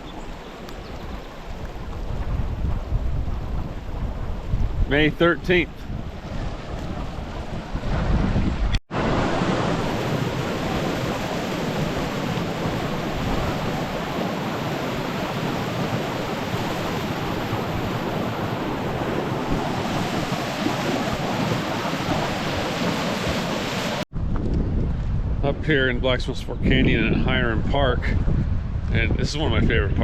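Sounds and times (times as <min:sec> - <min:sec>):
rushing river water roar: 0:08.9 - 0:24.0.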